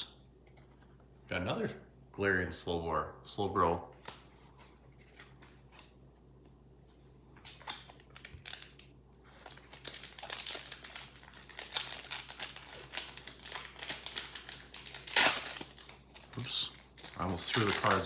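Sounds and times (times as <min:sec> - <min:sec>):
foil wrapper crinkling: 0:07.4 - 0:18.0.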